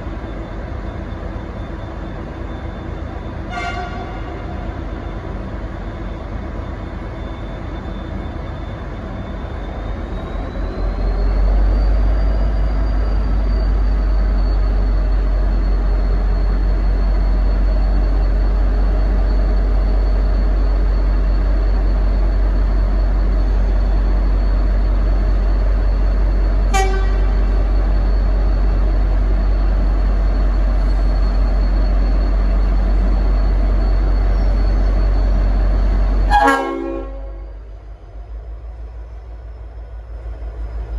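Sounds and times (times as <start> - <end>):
diesel locomotive rumble: 0.0 - 40.9
locomotive horn toot: 3.5 - 4.6, 26.7 - 27.7, 36.3 - 37.7
thin high whine: 36.3 - 37.7.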